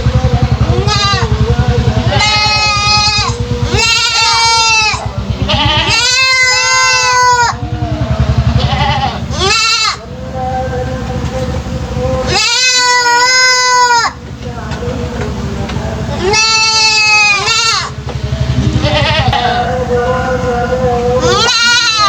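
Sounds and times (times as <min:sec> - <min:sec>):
goat kid bleating: 0:00.8 - 0:01.3, 0:02.0 - 0:07.6, 0:08.6 - 0:10.0, 0:12.3 - 0:14.2, 0:16.1 - 0:18.0, 0:18.7 - 0:19.7, 0:21.2 - 0:22.0.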